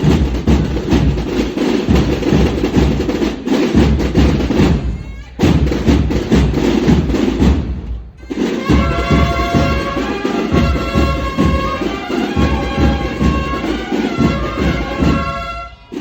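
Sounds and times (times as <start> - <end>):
marching band drums: 0.0 - 16.0
bugles holding notes: 8.2 - 16.0.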